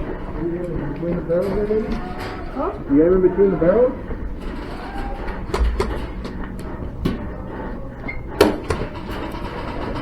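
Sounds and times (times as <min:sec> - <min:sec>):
sharp knocks: 0:05.5 - 0:06.4.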